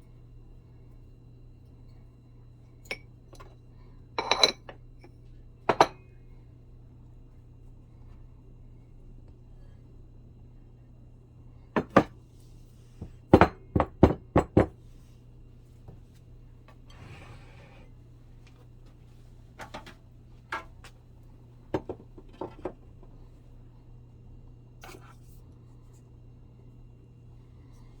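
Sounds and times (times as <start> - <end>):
utensils clinking against a bowl: 4.2 - 4.8.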